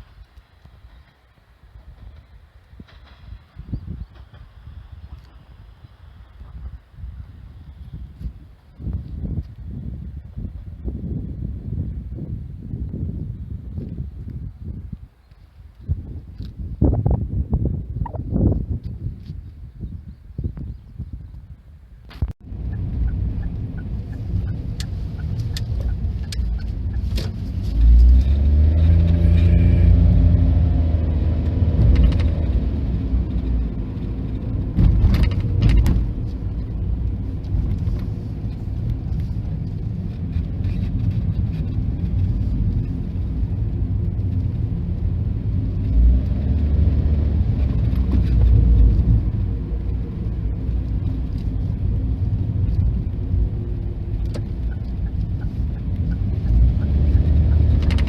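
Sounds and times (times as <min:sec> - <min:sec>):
passing vehicle engines rumbling: 0:22.4 - 0:58.0.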